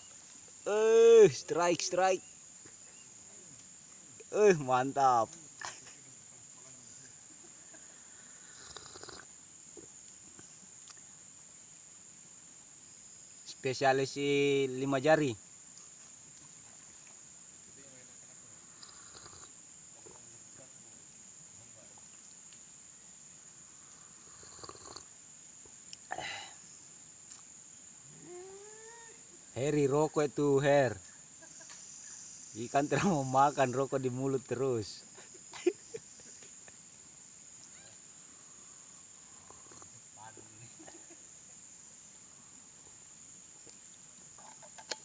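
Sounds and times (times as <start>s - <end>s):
insect chirring: 0.0s - 45.0s
faint clicks: 9.8s - 11.1s
rustles: 25.3s - 45.0s.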